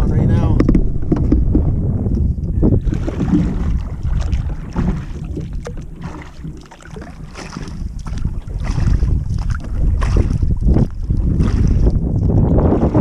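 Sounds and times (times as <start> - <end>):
water sounds from kayak: 0.0 - 13.0
wind noise on microphone: 0.0 - 13.0.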